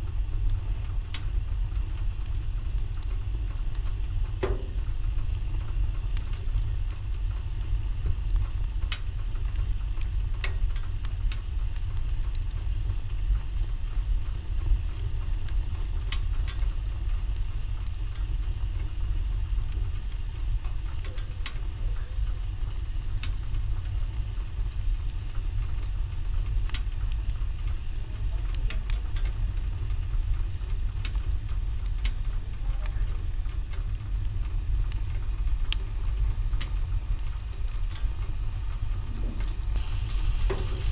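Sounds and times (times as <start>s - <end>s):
low fire rumble: 0.0s - 40.9s
wood fire crackling: 0.0s - 40.9s
sharp pops: 4.4s - 4.9s.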